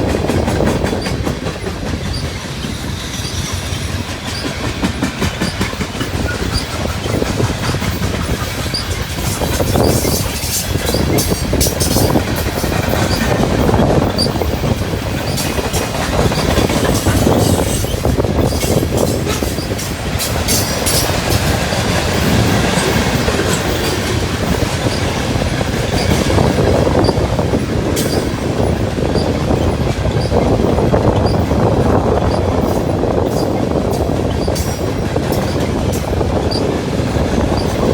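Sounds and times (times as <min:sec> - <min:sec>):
train wheels rumbling on rails: 0:00.0 - 0:37.9.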